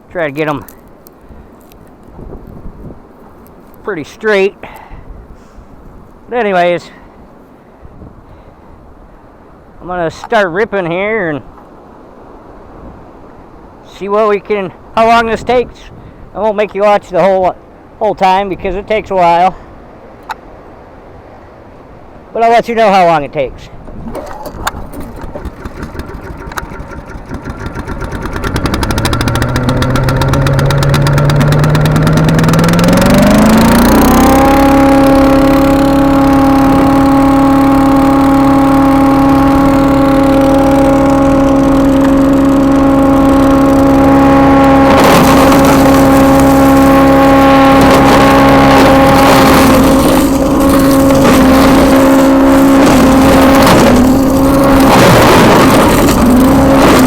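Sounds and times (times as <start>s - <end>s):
wood chipper engine running: 23.8s - 57.0s
crackling and knocking: 23.9s - 57.0s.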